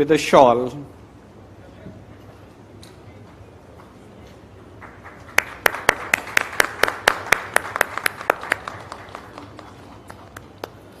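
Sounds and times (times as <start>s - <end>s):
audience applause: 4.8s - 11.0s
close person clapping: 4.8s - 11.0s.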